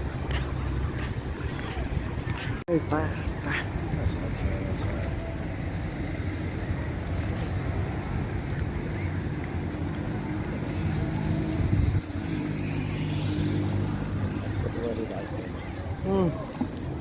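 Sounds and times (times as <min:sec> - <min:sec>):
wind rushing over microphone: 0:06.8 - 0:14.7.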